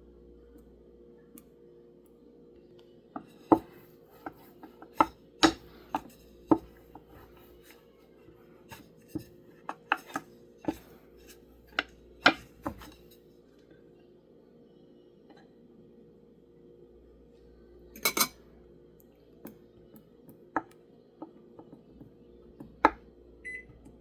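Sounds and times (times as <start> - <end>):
faint steady hum: 0.0 - 24.0
kitchen utensils clicking and knocking: 18.0 - 18.4.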